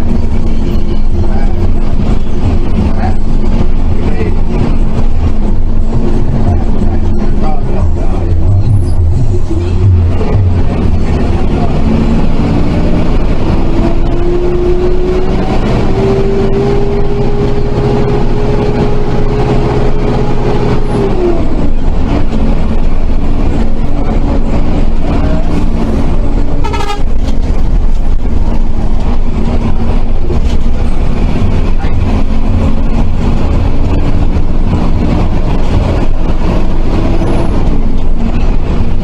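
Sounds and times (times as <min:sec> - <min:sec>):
bus engine and road noise: 0:00.0 - 0:39.0
bus horn toot: 0:26.6 - 0:27.4.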